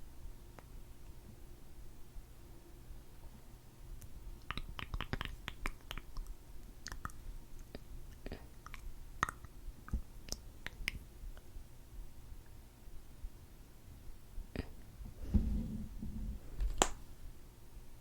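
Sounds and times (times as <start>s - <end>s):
wet lip smacks and clicks: 4.0s - 11.5s.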